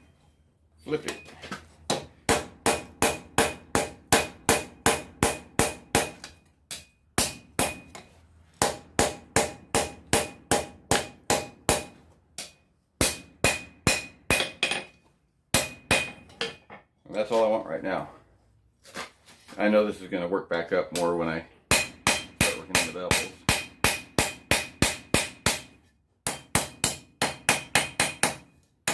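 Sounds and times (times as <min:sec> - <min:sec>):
hammer striking metal on anvil: 0:01.9 - 0:16.7, 0:21.7 - 0:28.9.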